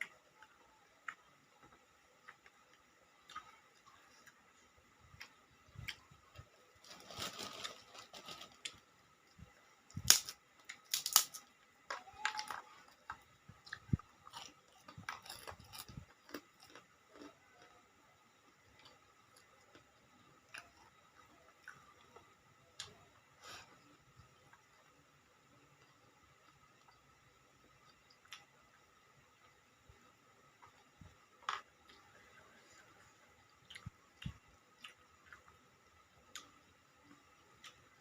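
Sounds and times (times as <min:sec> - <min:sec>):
crunchy bites: 0:10.0 - 0:11.4.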